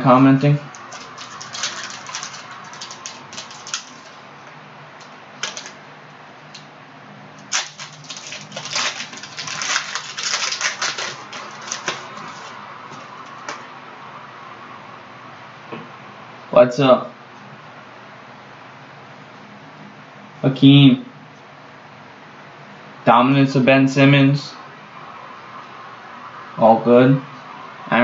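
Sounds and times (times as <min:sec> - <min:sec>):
trading cards flipping: 0:00.7 - 0:04.2, 0:05.0 - 0:05.8, 0:07.4 - 0:13.6.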